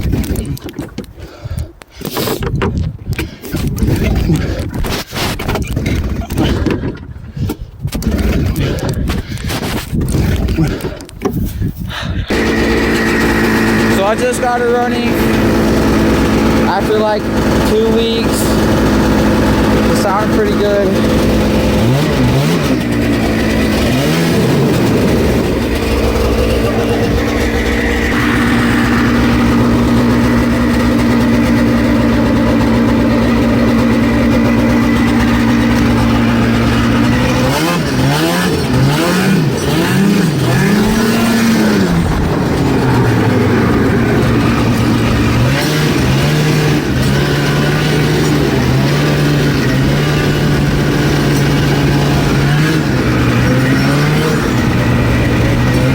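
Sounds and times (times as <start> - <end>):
snowmobile engine revving: 12.3 - 55.9.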